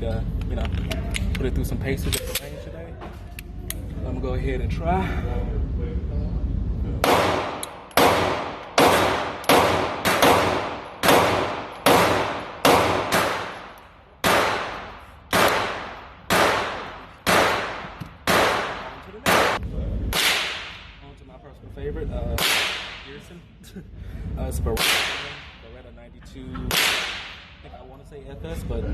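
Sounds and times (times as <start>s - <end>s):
handgun shots echoing: 7.0s - 20.8s.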